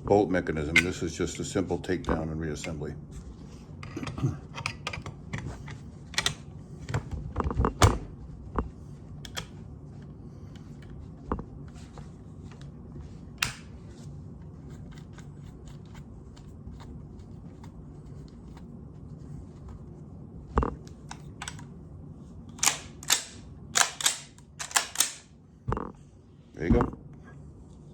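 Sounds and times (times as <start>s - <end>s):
low steady hum: 0.0s - 27.9s
rifle metallic clicks: 22.6s - 25.3s.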